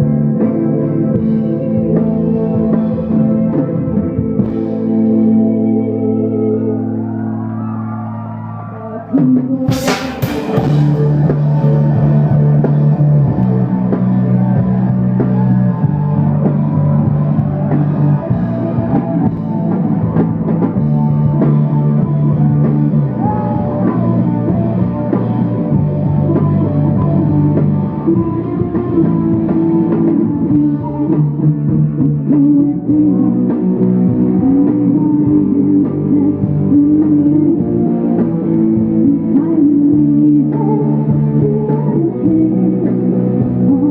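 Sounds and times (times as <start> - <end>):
bass guitar: 0.0 - 43.9
drums: 0.0 - 43.9
electric guitar: 0.0 - 43.9
cymbal crash: 9.7 - 11.2.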